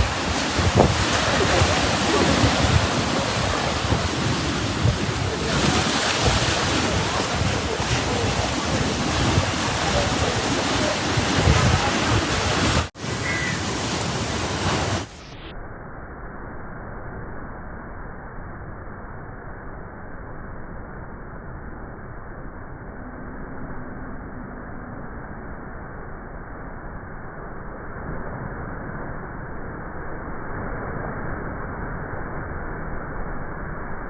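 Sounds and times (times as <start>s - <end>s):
sea waves breaking: 0.0s - 15.1s
wind on microphone: 0.0s - 15.1s.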